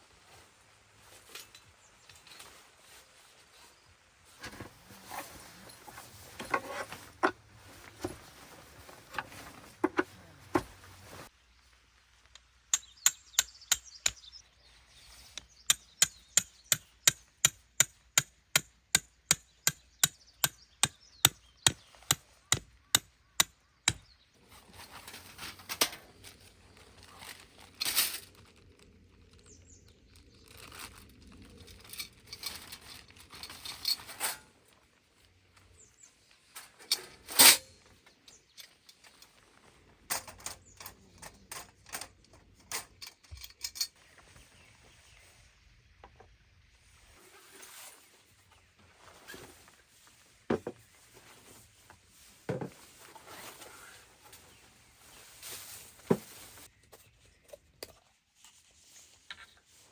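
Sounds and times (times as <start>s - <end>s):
irregular knocks and handling: 4.3s - 11.3s, 48.4s - 54.6s, 55.2s - 59.7s.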